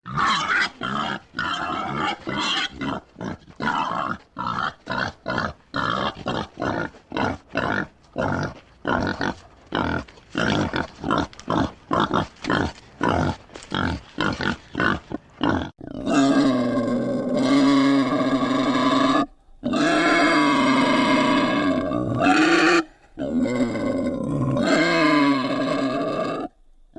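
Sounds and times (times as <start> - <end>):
wild boar grunting: 0.1 - 26.5.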